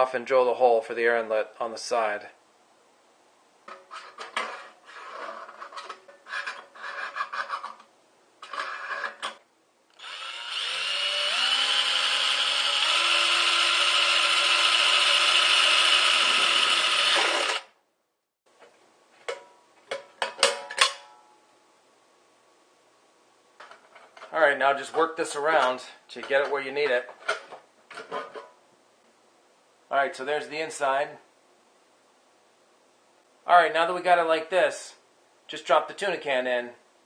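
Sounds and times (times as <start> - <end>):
electric drill boring through metal: 10.0 - 17.7.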